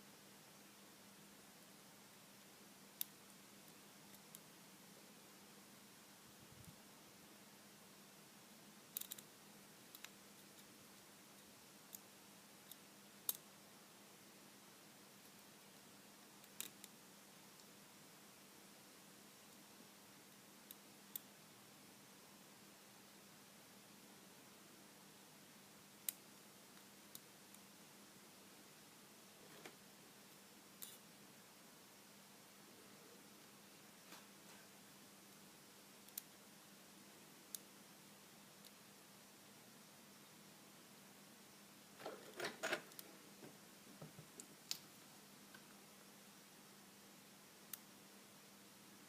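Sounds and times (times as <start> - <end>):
faint steady hum: 0.0 - 49.0.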